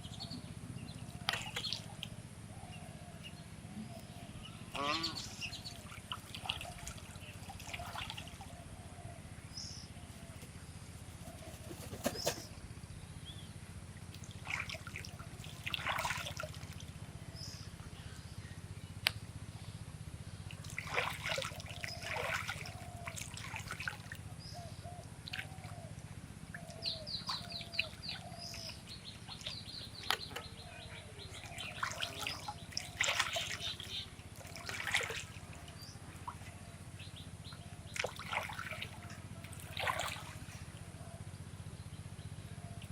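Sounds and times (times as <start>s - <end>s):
splashing water: 1.2s - 2.1s, 4.8s - 8.4s, 14.0s - 17.6s, 20.5s - 24.3s, 31.2s - 36.7s, 37.9s - 40.7s
swans calling: 4.7s - 5.6s.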